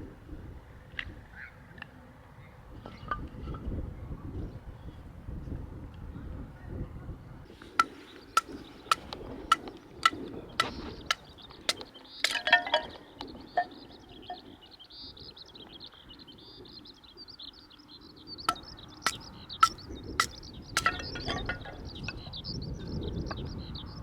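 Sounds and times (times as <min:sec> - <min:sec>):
birds chirping faintly: 0:07.5 - 0:24.0
sharp ringing knocks: 0:07.8 - 0:13.0, 0:18.5 - 0:22.0.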